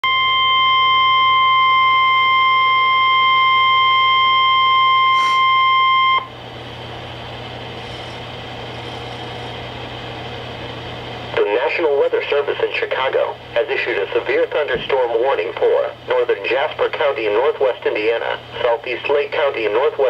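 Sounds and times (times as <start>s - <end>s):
alarm tone beep: 0.0s - 6.3s
radio hiss with low hum: 5.1s - 5.5s, 11.3s - 20.0s.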